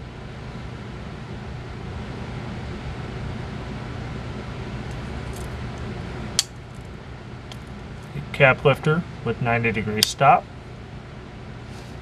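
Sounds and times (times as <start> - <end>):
room air handling hum: 1.6 - 12.0
sharp click: 4.9 - 5.6.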